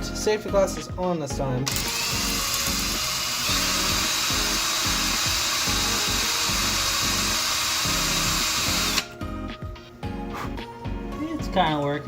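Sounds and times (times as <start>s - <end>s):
small power drill whining: 1.6s - 9.2s.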